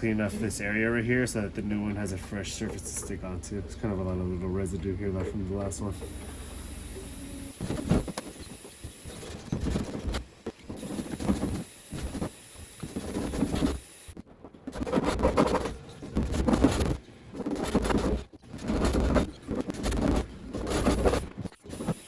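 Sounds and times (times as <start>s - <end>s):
scraping and rubbing: 5.2s - 22.0s.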